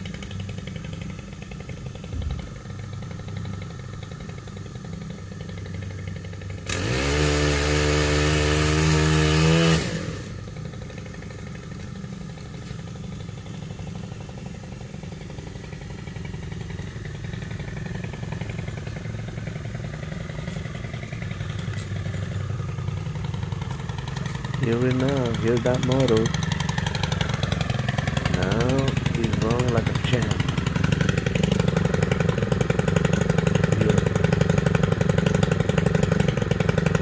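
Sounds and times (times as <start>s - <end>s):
small gasoline engine revving: 0.0s - 37.0s.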